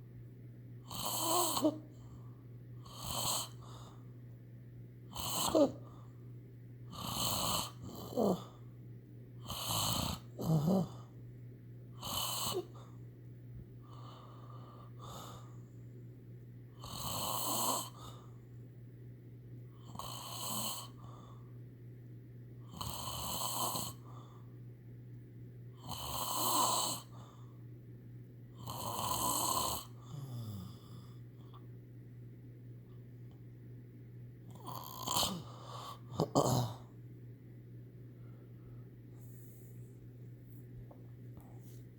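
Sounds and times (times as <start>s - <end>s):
steady low hum: 0.0s - 41.9s
person snoring: 0.8s - 1.9s, 2.8s - 3.9s, 5.1s - 6.0s, 6.9s - 8.6s, 9.4s - 11.1s, 12.0s - 12.8s, 16.8s - 18.2s, 19.8s - 21.1s, 22.7s - 24.1s, 25.8s - 27.2s, 28.6s - 31.2s, 34.5s - 36.9s.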